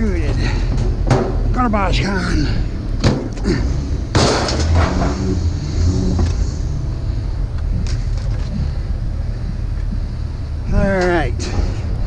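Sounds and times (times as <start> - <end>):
vehicle engine rumbling: 0.0 - 12.0
scrap metal clatter: 4.1 - 5.5.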